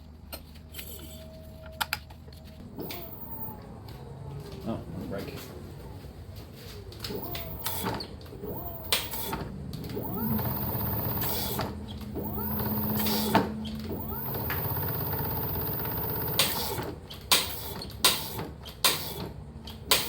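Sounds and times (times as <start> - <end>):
scooter motor whining: 2.6 - 4.8, 7.0 - 17.1.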